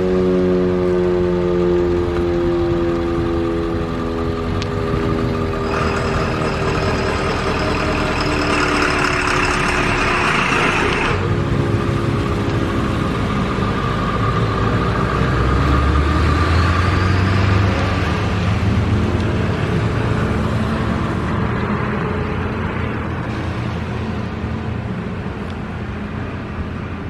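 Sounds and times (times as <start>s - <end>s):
fire siren winding down: 0.0s - 21.4s.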